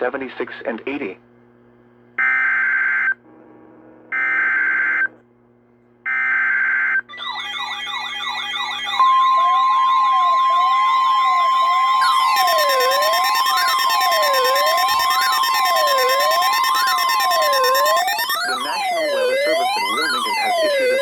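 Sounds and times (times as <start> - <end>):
steady high tone: 7.2 - 21.0
data-header tone bursts: 12.0 - 21.0
warbling alert tones: 12.0 - 21.0.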